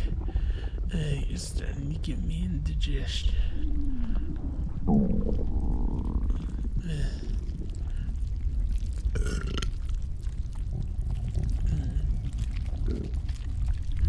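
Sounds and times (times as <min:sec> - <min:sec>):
stomach gurgling and rumbling: 0:00.0 - 0:14.0
short belch: 0:09.1 - 0:09.8.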